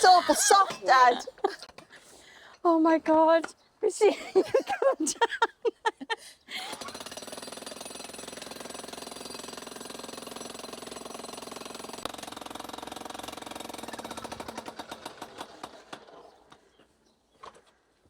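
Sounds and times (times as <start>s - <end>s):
jackhammer breaking concrete: 6.6s - 16.4s.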